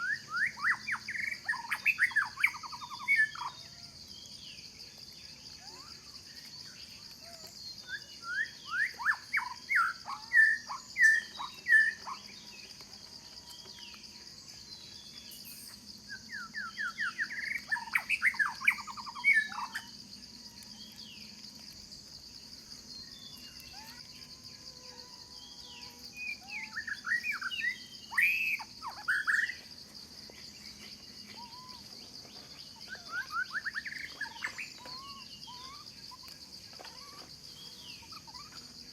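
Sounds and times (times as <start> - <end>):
songbirds chirping: 0.0 - 38.9
high-pitched insect drone: 15.2 - 38.9.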